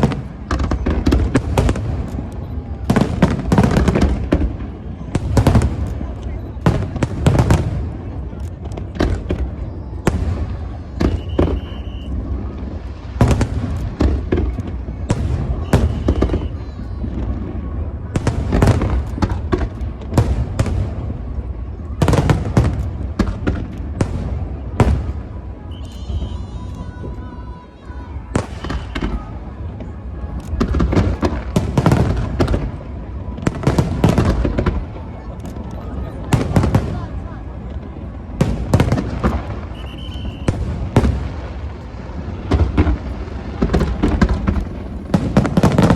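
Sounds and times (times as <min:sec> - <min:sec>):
fireworks bursting with sharp bangs: 0:00.0 - 0:45.9.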